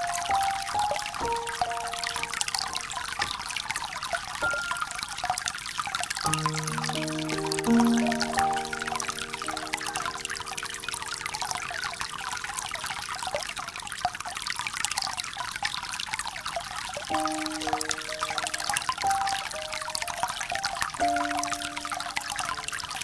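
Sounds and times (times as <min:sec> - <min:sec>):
aquarium water trickling and splashing: 0:00.0 - 0:23.0
soft held musical notes: 0:06.3 - 0:12.8.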